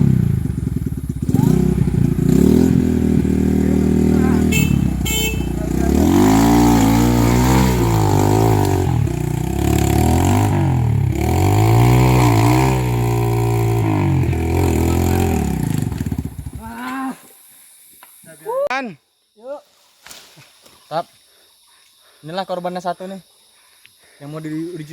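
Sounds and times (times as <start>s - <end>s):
motorcycle engine revving: 0.0s - 16.8s.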